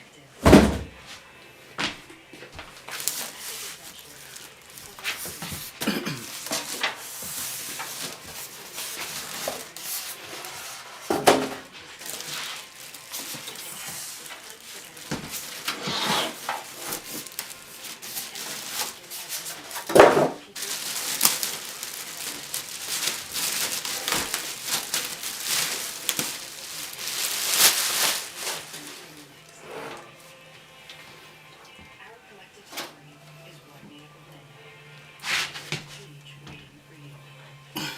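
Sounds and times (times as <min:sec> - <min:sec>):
handling rubbing and rustling: 0:02.7 - 0:30.1.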